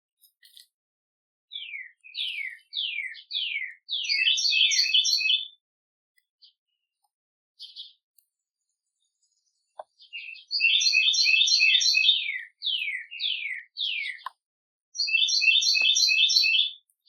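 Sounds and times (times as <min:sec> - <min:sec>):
songbird trilling: 0:01.5 - 0:05.6, 0:10.0 - 0:14.4, 0:15.0 - 0:16.8.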